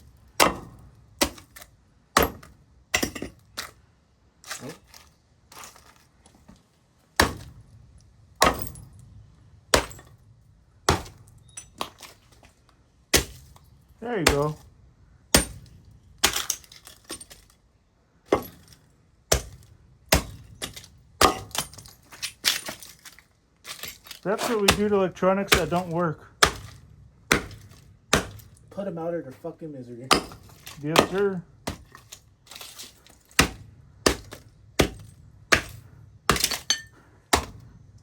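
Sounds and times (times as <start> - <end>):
broken casing clinking: 11.1 - 12.2, 36.3 - 37.0
glass and plastic cracking: 20.6 - 25.9
hard blows smashing device: 23.7 - 28.7, 30.1 - 37.7.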